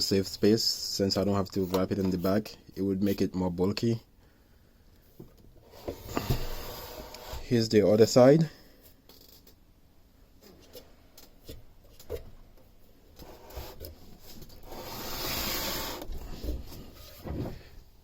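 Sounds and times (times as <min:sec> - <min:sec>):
scraping rub: 0:13.2 - 0:17.7.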